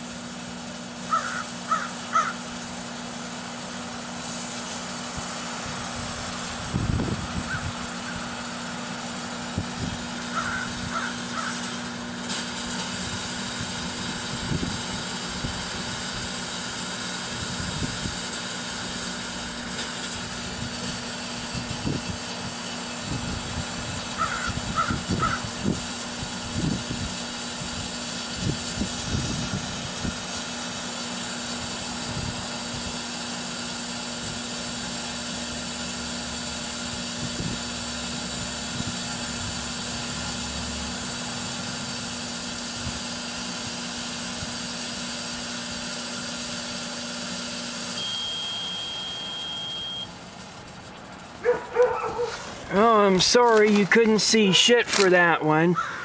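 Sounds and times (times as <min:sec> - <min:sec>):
microwave oven humming: 0:00.0 - 0:56.0
bird calling: 0:01.0 - 0:02.5, 0:07.4 - 0:08.3, 0:10.2 - 0:11.8, 0:24.2 - 0:25.5, 0:55.7 - 0:56.0.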